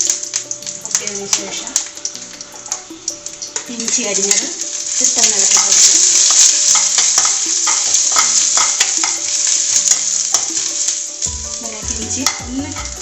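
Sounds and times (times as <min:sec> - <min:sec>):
food sizzling in oil: 0:00.0 - 0:13.0
spoon clicking against pan: 0:05.2 - 0:10.6, 0:12.2 - 0:13.0.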